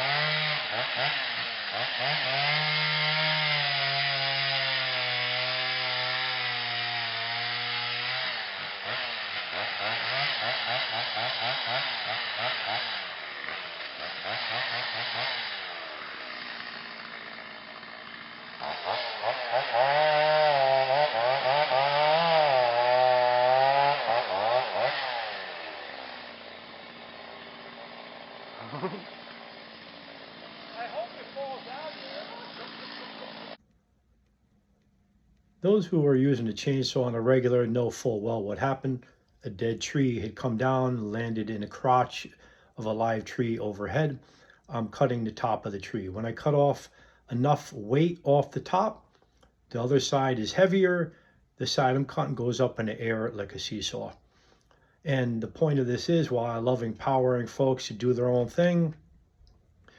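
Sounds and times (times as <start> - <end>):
chainsaw cutting wood: 0.0 - 33.6
chainsaw idling: 0.0 - 33.6.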